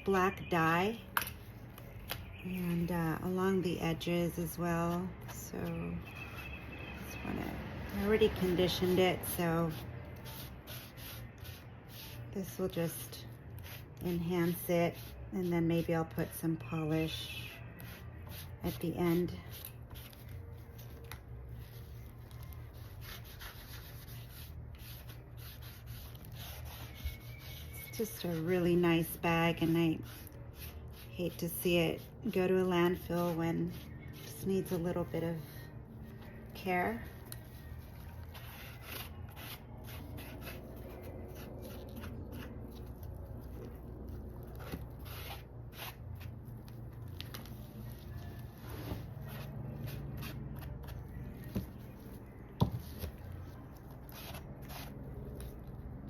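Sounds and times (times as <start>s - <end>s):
low steady hum: 0.0s - 56.0s.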